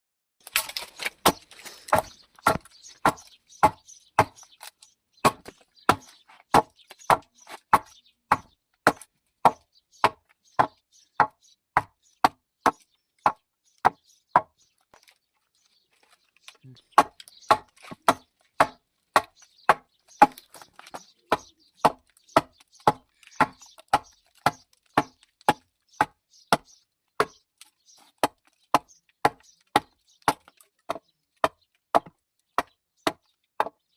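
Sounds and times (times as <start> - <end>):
sharp knocks on wood: 1.3 - 4.4, 5.2 - 14.6, 28.2 - 33.8.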